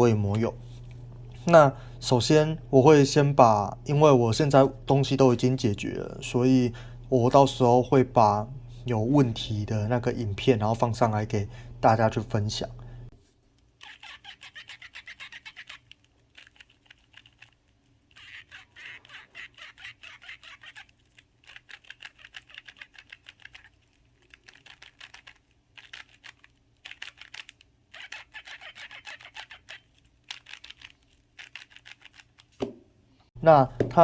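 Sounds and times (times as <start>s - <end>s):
speedcube turning clicks: 13.8s - 32.6s.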